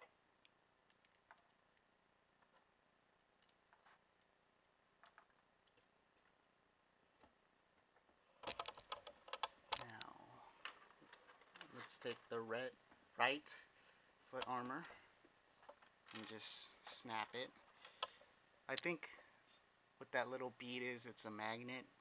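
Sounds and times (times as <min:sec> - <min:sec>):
small armor pieces clicking: 0:08.4 - 0:10.0.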